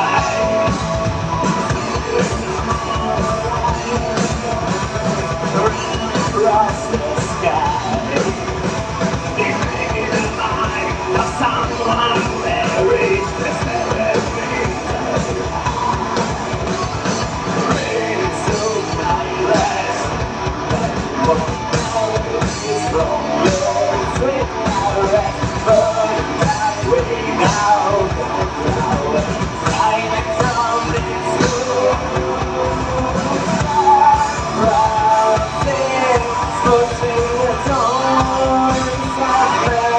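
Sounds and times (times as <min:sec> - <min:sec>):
drum kit: 0:00.0 - 0:39.9
person singing: 0:00.0 - 0:39.9
rock band playing live: 0:00.0 - 0:39.9.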